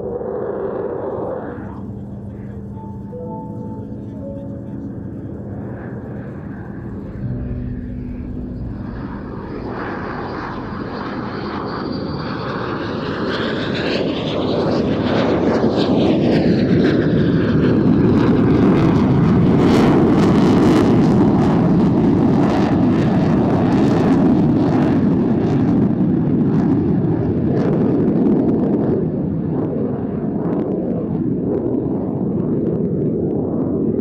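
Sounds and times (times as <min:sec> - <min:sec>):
sweeping whooshing tones: 0:00.0 - 0:13.3
crackle of jet engines: 0:00.0 - 0:34.0
jet fighter roar: 0:00.0 - 0:34.0.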